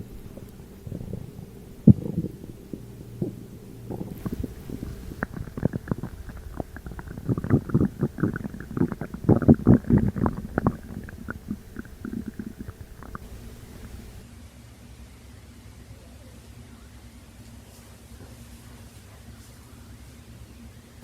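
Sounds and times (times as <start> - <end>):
stomach gurgling: 0.0 - 14.2.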